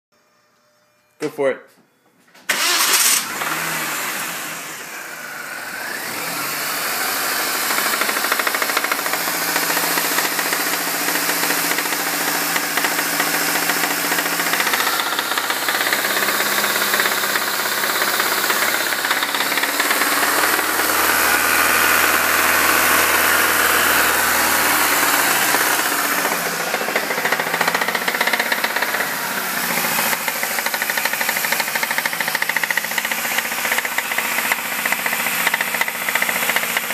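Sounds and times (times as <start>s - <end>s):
car engine starting and running: 2.5s - 36.9s
engine clacking and clicking: 7.6s - 29.1s, 30.1s - 36.9s.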